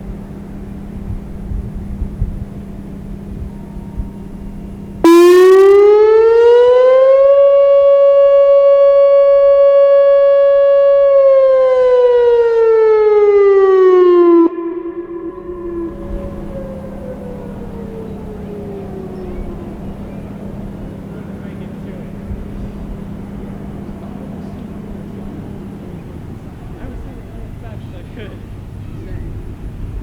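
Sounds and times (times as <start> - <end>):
faint siren tone: 3.0 - 26.8
electronic warning siren: 3.3 - 26.5.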